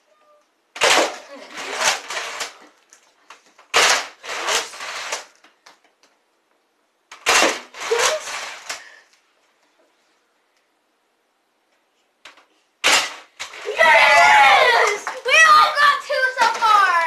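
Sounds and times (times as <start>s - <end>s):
toy blaster shot snap: 0.8s - 1.2s, 3.7s - 5.2s, 7.2s - 8.8s, 12.8s - 13.6s.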